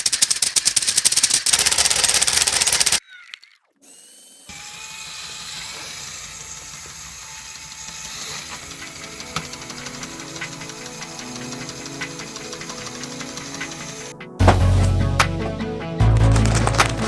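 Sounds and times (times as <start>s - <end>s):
rapid clatter of plastic pistons: 0.0s - 3.0s, 5.0s - 14.1s.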